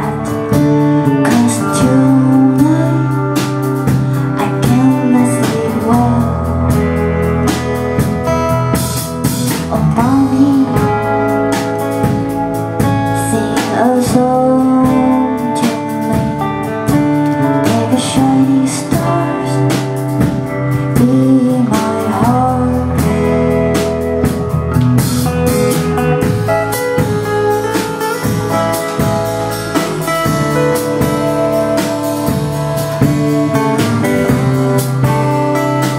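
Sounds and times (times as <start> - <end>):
person singing: 0.0 - 7.5, 8.7 - 12.2, 12.8 - 24.3
music with guitar and drums: 0.0 - 35.9.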